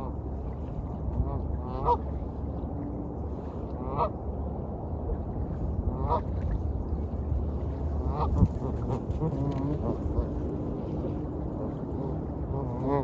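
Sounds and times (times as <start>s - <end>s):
waves washing: 0.0s - 13.0s.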